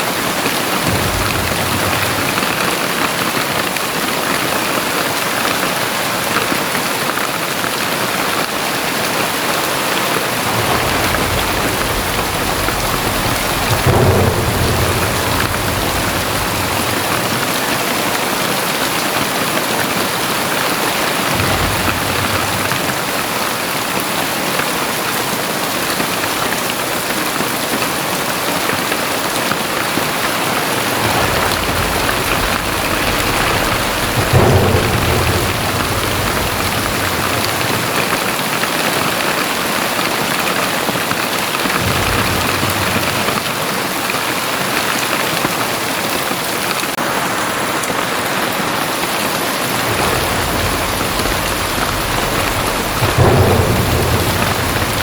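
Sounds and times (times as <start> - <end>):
heavy rain pouring: 0.0 - 55.0
deep low rumbles: 0.8 - 3.5, 10.3 - 18.2, 21.3 - 23.6, 30.4 - 38.8, 41.8 - 43.5, 49.7 - 55.0.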